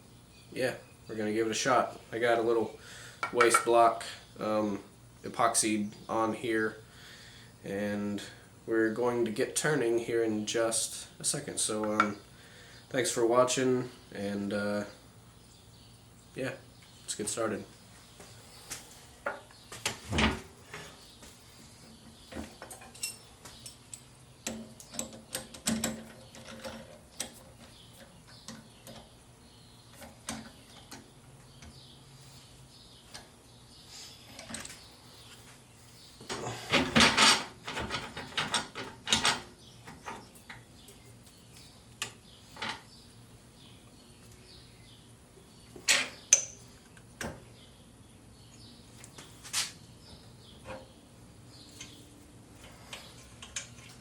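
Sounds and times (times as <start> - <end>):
metal and wood clanking: 36.3 - 40.6.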